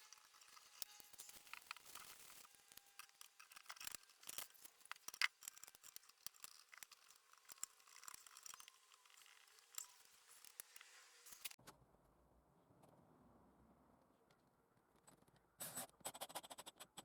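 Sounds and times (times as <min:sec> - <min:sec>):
faint small clicks: 0:00.0 - 0:11.6.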